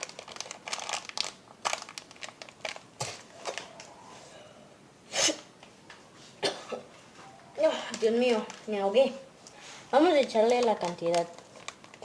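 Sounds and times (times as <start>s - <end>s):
food bag crinkling: 0.0s - 3.9s, 7.8s - 9.2s, 9.9s - 12.0s
person coughing: 6.4s - 6.9s.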